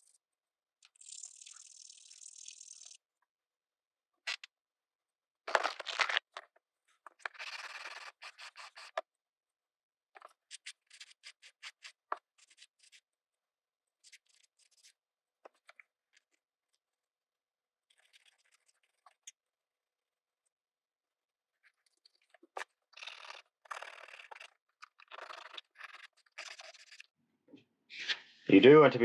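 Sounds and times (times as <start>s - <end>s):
file rubbing on plastic: 7.1s - 9.0s, 10.2s - 13.0s.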